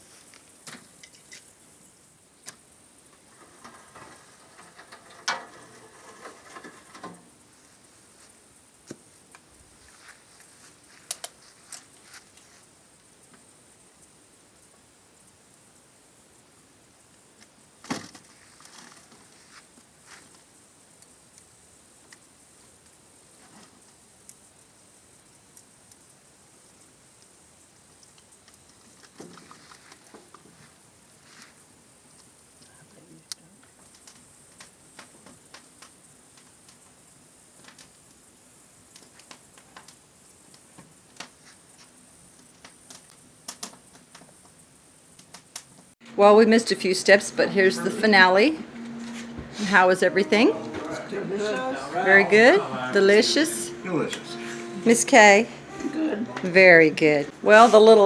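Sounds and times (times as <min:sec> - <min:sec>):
steady hiss: 0:00.0 - 0:58.0
faint clicks and crackles: 0:38.8 - 0:45.9.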